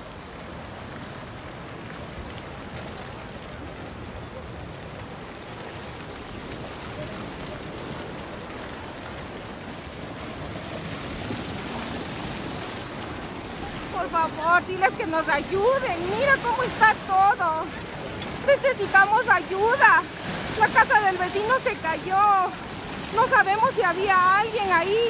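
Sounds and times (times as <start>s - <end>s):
heavy rain: 0.0s - 25.0s.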